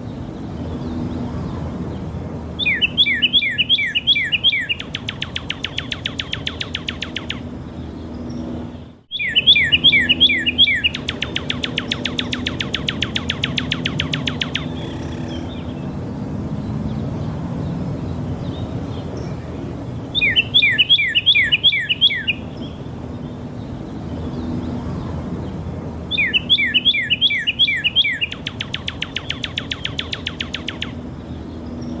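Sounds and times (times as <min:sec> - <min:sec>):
bird singing whistles and trill: 0:02.6 - 0:07.5, 0:09.1 - 0:15.9, 0:20.1 - 0:23.4, 0:26.1 - 0:32.0.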